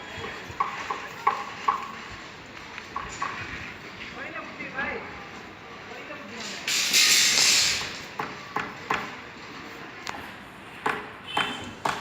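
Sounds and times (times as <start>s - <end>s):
sharp hand tool knocks: 10.8s - 12.0s.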